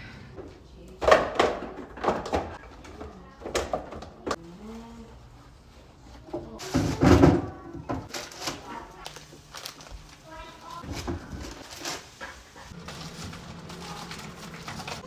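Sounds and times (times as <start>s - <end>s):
food containers clattering on shelves: 0.0s - 4.4s, 6.3s - 8.6s, 10.8s - 15.0s.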